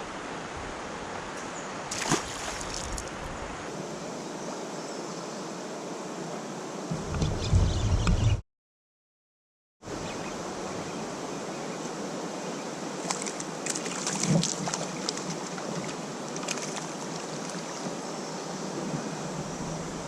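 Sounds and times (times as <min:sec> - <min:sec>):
river water rushing: 0:00.1 - 0:03.2
water splashes: 0:01.9 - 0:03.3, 0:13.0 - 0:17.9.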